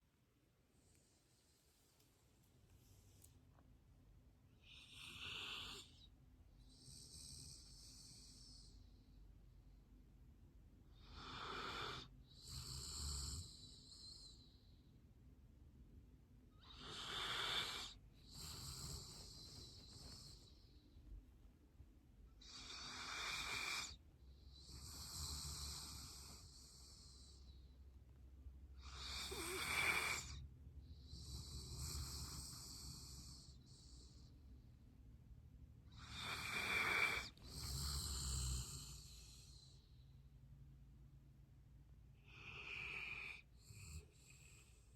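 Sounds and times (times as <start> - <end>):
dog snoring: 4.6 - 9.0, 10.8 - 14.7, 16.6 - 20.8, 22.4 - 27.6, 28.7 - 34.3, 35.8 - 40.0, 42.2 - 44.9.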